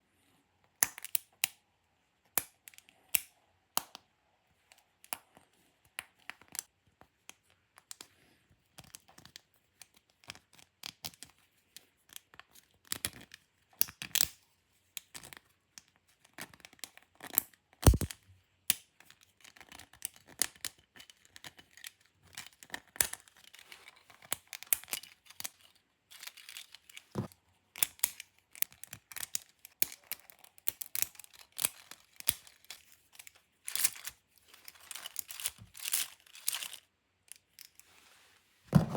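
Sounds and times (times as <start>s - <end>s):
plastic parts clicking and scraping: 17.8s - 18.1s, 19.0s - 37.9s.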